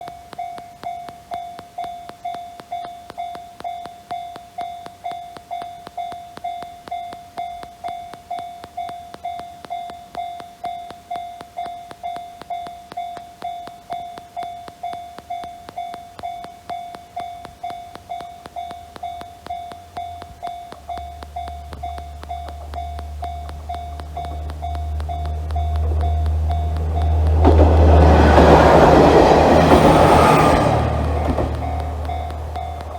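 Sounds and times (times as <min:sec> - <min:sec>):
low rumble of train: 0:24.0 - 0:32.9.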